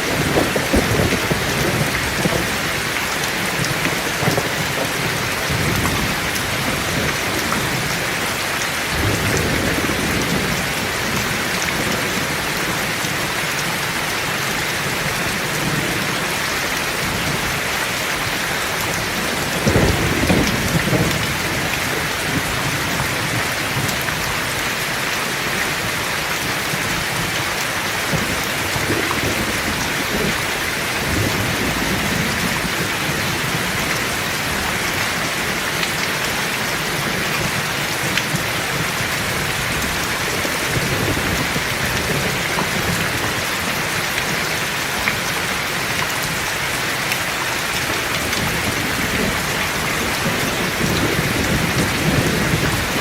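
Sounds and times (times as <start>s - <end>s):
low rolling thunder: 0.0s - 8.2s, 8.9s - 12.9s, 18.8s - 24.3s, 28.0s - 35.9s, 36.8s - 43.4s, 48.1s - 53.0s
heavy rain: 0.0s - 53.0s.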